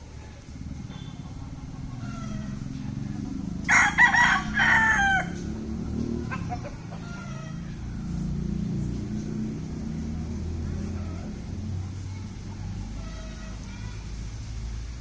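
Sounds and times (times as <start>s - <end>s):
steady low rumble: 0.0s - 15.0s
rooster crowing: 0.8s - 8.6s, 12.6s - 13.9s.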